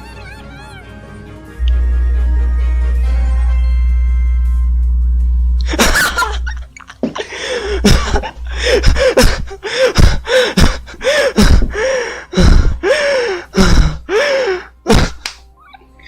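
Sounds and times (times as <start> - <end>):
music with heavy bass: 1.6 - 6.6, 7.7 - 9.1
person coughing: 5.7 - 6.5, 7.2 - 11.7, 14.9 - 15.3.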